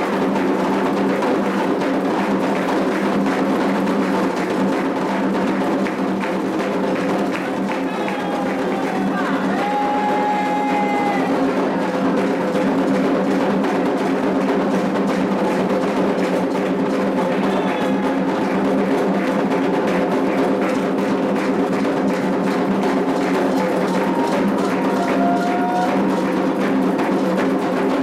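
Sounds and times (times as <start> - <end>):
hand drums playing steady rhythm: 0.0 - 28.0.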